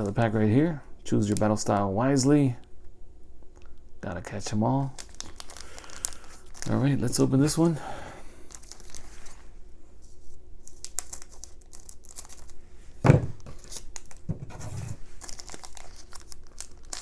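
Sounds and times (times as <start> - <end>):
packaging crinkling and rustling: 4.9 - 7.8, 8.4 - 17.0
heavy thump: 13.0 - 13.4.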